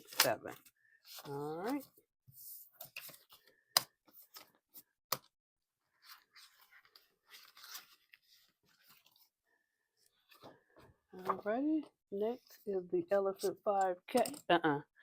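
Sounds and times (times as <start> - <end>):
paper and plastic rustling: 6.0 - 9.4.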